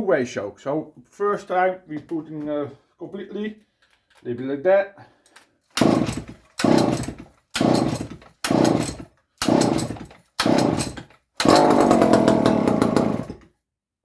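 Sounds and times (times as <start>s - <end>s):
chainsaw engine running: 5.8s - 13.4s
recoil starter pulls: 5.8s - 13.4s.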